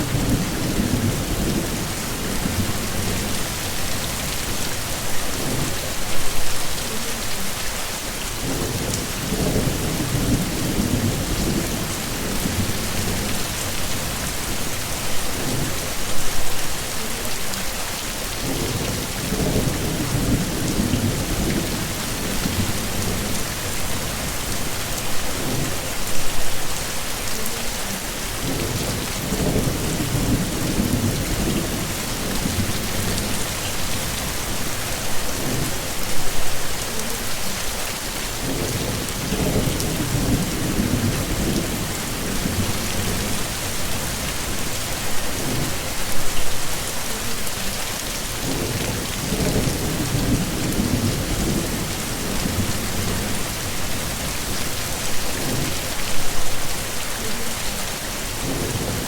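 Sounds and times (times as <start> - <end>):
rolling thunder rumbles: 0.0 - 4.2, 28.4 - 35.7, 38.4 - 45.7, 48.4 - 54.6
heavy rain pouring: 0.0 - 59.0.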